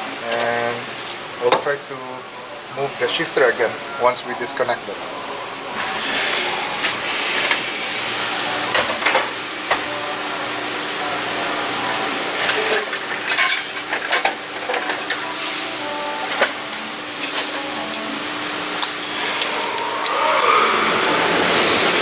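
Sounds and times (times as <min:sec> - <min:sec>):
steady background hum: 0:00.0 - 0:22.0
hand tools clicking and rattling: 0:11.9 - 0:20.6.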